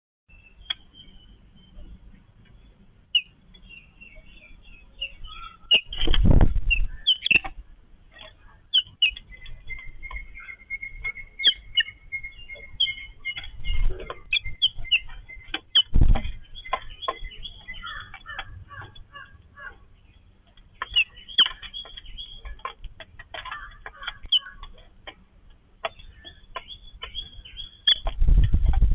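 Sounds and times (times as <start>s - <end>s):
birds chattering with squeaky calls: 0.3s - 28.9s
loud low thuds: 15.8s - 17.2s.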